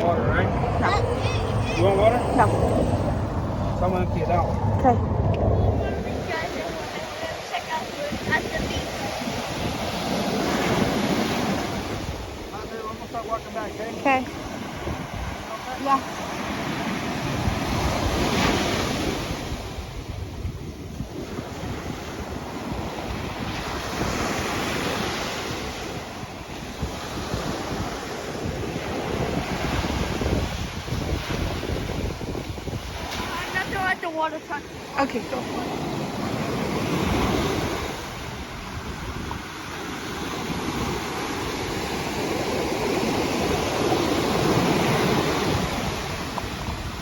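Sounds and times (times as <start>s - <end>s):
ocean surf breaking: 0.0s - 47.0s
wind rumbling on microphone: 0.0s - 47.0s.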